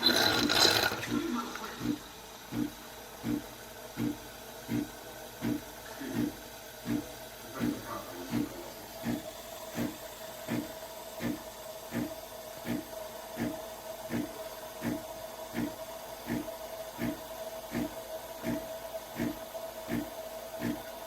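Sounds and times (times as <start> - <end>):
espresso machine pump pulsing: 0.0 - 21.0
steady hum: 0.0 - 21.0.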